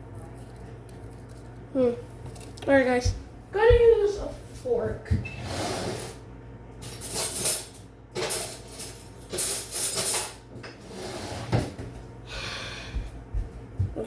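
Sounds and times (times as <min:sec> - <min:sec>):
metal cutlery clinking: 0:06.8 - 0:10.4.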